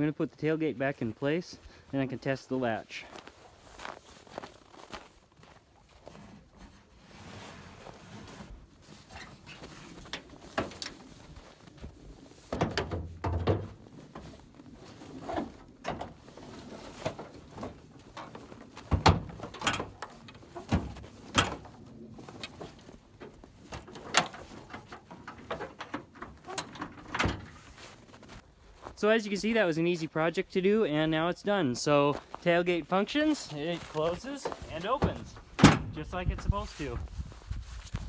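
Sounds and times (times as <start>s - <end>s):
tailgate clunks and latch clicks: 35.0s - 36.0s.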